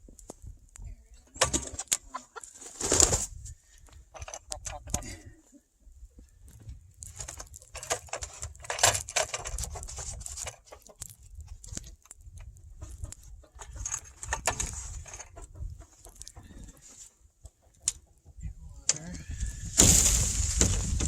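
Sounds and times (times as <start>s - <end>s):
hens clucking: 0.9s - 3.3s, 4.0s - 6.3s, 9.4s - 21.0s.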